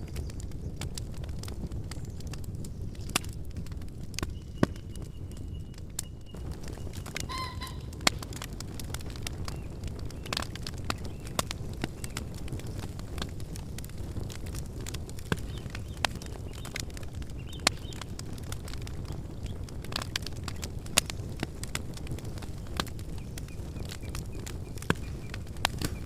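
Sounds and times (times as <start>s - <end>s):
campfire crackling: 0.0s - 26.0s
high squeaky call: 7.3s - 7.9s.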